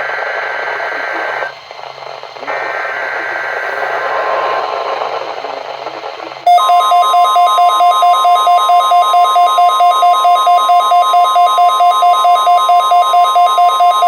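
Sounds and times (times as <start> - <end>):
radio static: 0.0 - 7.2
steady warning alarm tone: 6.4 - 14.0
pulsing beep: 6.5 - 14.0.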